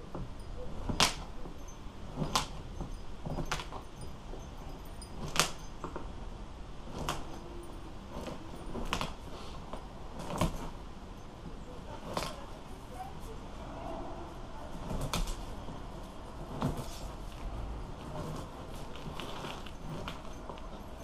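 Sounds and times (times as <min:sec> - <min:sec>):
scraping and handling: 0:14.4 - 0:21.0.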